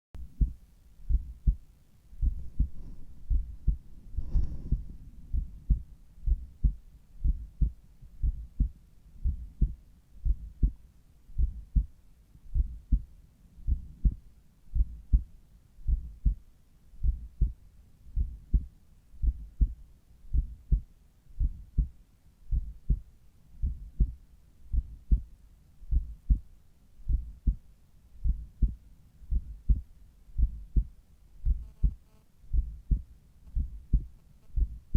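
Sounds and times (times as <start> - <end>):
heartbeat through stethoscope: 0.2 - 1.6, 2.2 - 11.9, 12.5 - 16.4, 17.0 - 27.6, 28.2 - 34.9.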